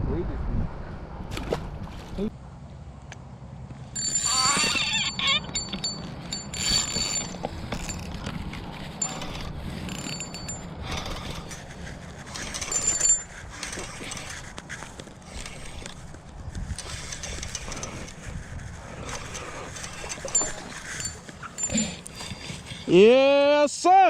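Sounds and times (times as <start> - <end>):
fishing reel being cranked: 4.0 - 8.2, 9.0 - 18.3, 19.0 - 23.0
rustling and handling noise: 4.0 - 22.9.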